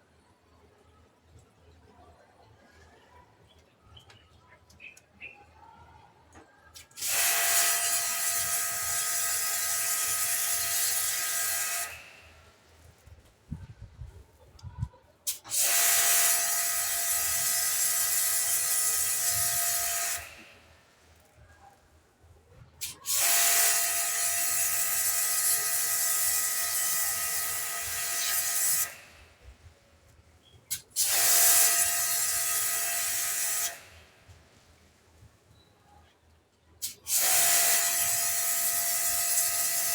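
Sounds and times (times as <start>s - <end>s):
pressure washer spraying: 6.8s - 12.1s, 15.3s - 20.4s, 22.8s - 29.1s, 30.7s - 34.0s, 36.8s - 39.9s.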